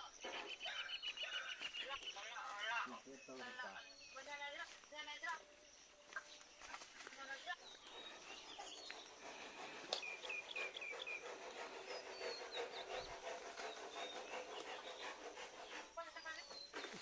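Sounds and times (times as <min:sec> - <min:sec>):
small birds chirping: 0:00.0 - 0:17.0
thin whistled bird notes: 0:07.6 - 0:15.1.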